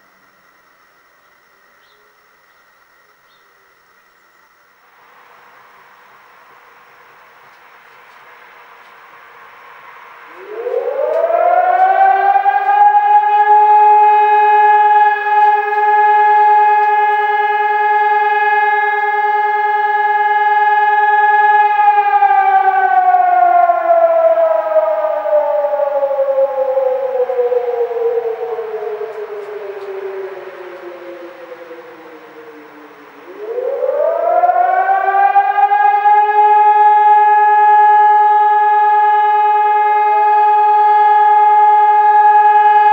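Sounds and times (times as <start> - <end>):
siren winding up and down: 10.1 - 42.9.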